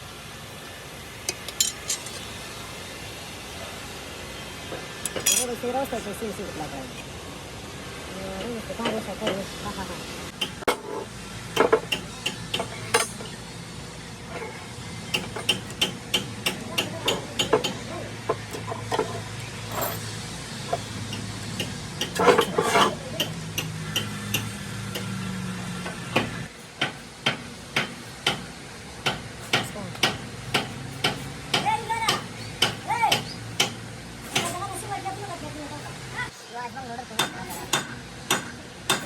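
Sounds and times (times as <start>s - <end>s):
hand tools tapping on metal: 1.3s - 2.3s, 5.0s - 5.6s, 11.6s - 13.4s, 15.1s - 20.0s, 20.6s - 25.1s, 25.8s - 34.6s, 37.2s - 39.0s.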